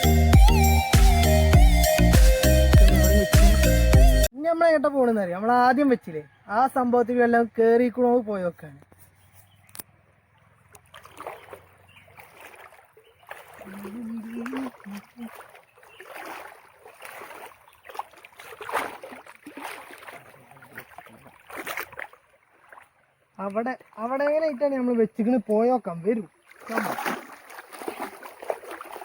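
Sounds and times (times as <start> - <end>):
water splashing and sloshing: 9.0 - 24.8, 26.3 - 29.0.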